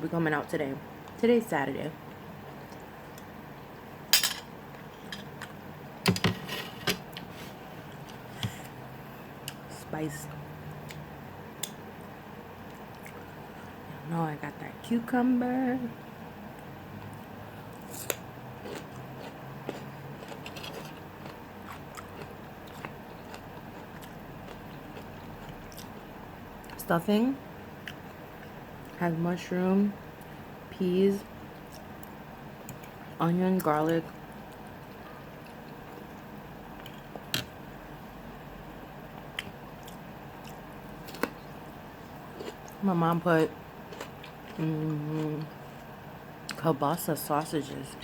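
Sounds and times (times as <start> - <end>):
low room noise: 0.0 - 48.0
chewing and crunching food: 10.7 - 13.8, 16.5 - 26.9, 27.8 - 29.0, 31.5 - 37.4, 39.1 - 46.6.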